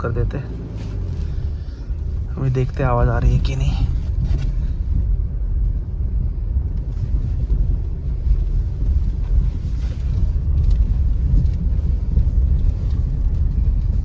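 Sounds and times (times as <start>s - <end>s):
road and tyre rumble in car: 0.0s - 14.0s.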